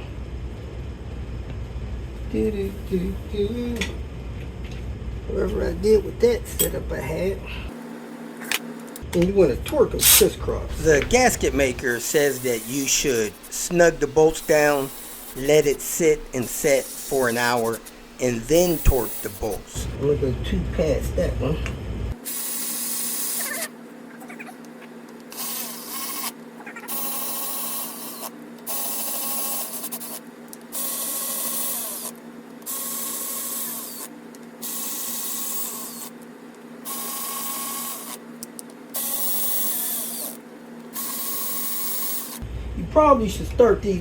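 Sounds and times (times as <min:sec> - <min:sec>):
cordless power tool whining: 0:10.7 - 0:19.9, 0:22.2 - 0:23.7, 0:25.3 - 0:36.2, 0:36.8 - 0:38.2, 0:38.9 - 0:42.4.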